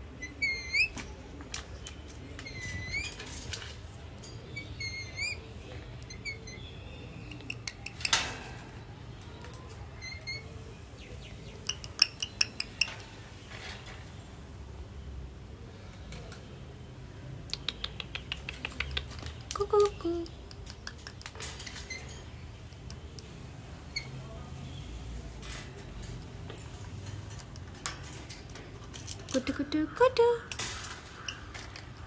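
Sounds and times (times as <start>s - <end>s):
parrot sharp clicks: 17.5s - 19.3s.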